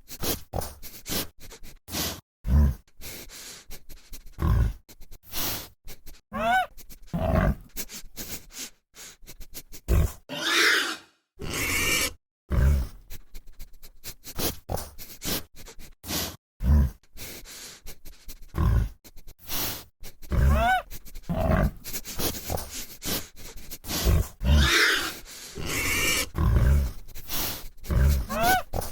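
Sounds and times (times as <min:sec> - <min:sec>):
boar grunting: 0:00.2 - 0:05.7, 0:06.3 - 0:08.0, 0:09.7 - 0:13.5, 0:16.1 - 0:28.9
boar squealing: 0:06.3 - 0:07.6, 0:09.9 - 0:12.7, 0:20.3 - 0:21.7, 0:23.9 - 0:26.9, 0:27.8 - 0:28.9.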